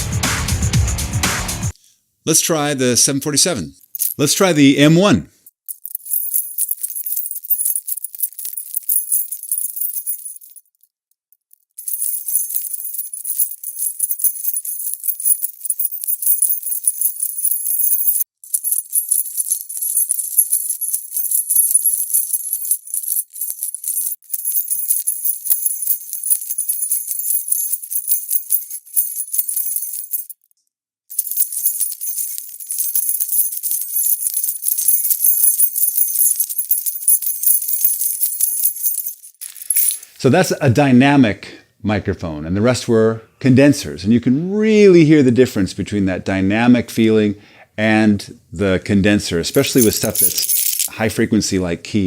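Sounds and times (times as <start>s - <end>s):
metal keys jangling: 3.9s - 4.2s, 5.5s - 10.8s, 11.4s - 30.5s, 31.1s - 40.2s, 49.6s - 50.9s.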